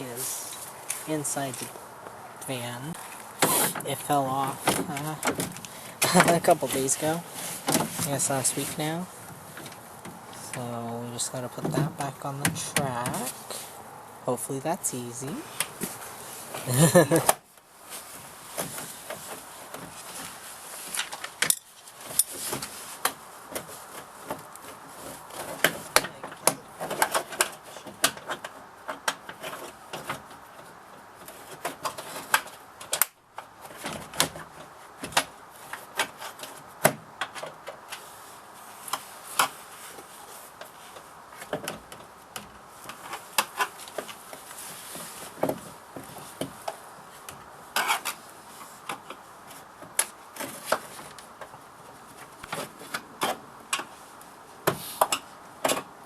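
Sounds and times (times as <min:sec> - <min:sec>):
clicks and knocks of hard parts: 0:04.5 - 0:06.5, 0:20.9 - 0:38.1, 0:54.6 - 0:56.0.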